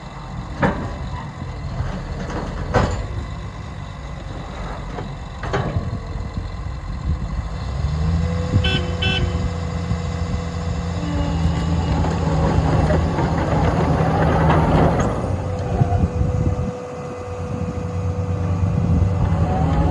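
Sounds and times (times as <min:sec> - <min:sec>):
bulldozer diesel engine under load: 0:00.0 - 0:19.9
rattling clatter: 0:00.4 - 0:07.6.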